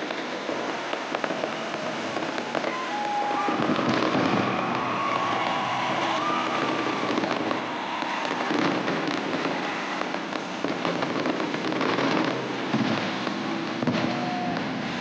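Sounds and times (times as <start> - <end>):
fireworks crackling and popping: 0.0 - 15.0.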